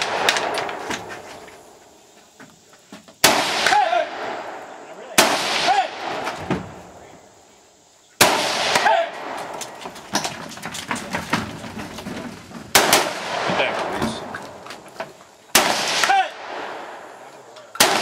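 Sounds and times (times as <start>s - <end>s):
loud gunshots with echo: 3.2s - 4.6s, 5.2s - 6.3s, 8.2s - 9.5s, 12.7s - 14.3s, 15.5s - 17.2s, 17.8s - 18.0s
faint sharp gunshot cracks: 15.5s - 16.8s, 17.8s - 18.0s.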